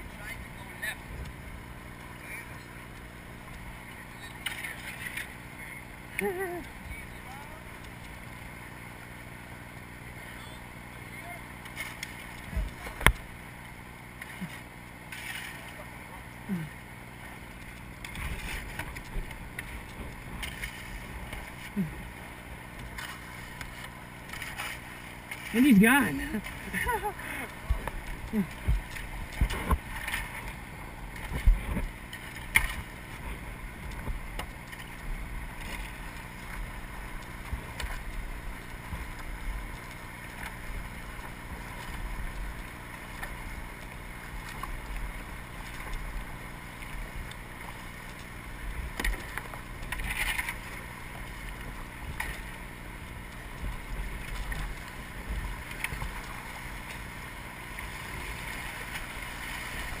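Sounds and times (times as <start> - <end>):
river water rushing: 4.7 - 60.0
kayak knocks and splashes: 27.5 - 36.4.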